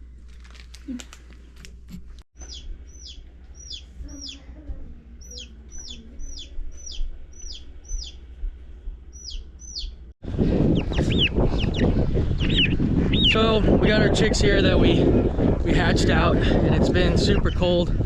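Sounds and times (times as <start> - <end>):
chicks peeping: 2.4 - 4.6, 5.2 - 8.2, 9.1 - 14.1.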